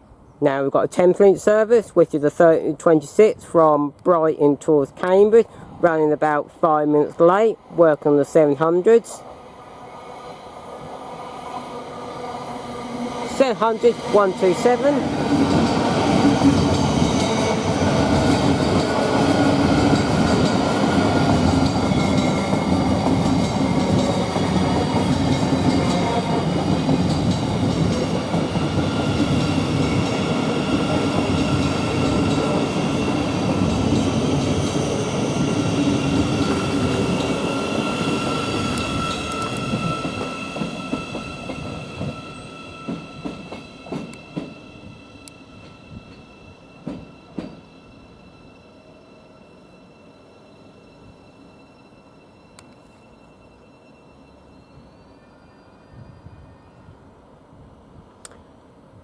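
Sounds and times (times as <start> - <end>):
train wheels rumbling on rail: 10.1 - 48.0
train brakes squealing: 11.3 - 57.2.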